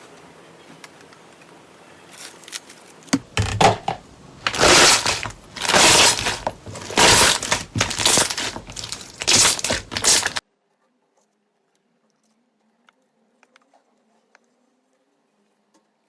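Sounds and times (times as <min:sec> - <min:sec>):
slime crackling when squeezed: 0:04.4 - 0:10.4.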